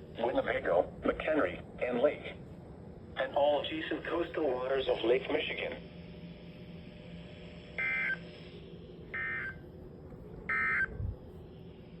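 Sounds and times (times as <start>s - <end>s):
radio background hiss: 0.0s - 6.5s
short digital data bursts: 7.8s - 8.3s.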